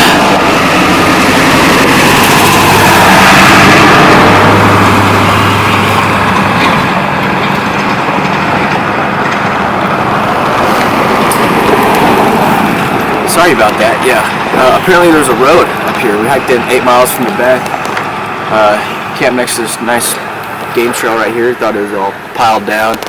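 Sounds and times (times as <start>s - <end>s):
vehicle driving past: 0.0s - 21.7s.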